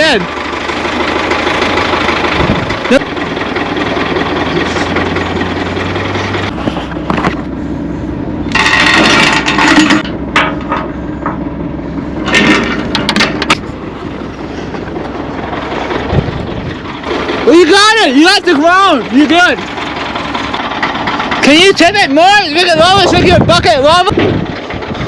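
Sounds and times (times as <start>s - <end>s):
heavy equipment engine running: 0.0s - 25.0s.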